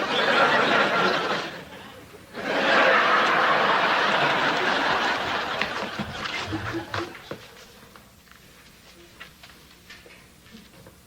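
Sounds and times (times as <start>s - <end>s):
studio audience laughing: 0.0s - 7.3s.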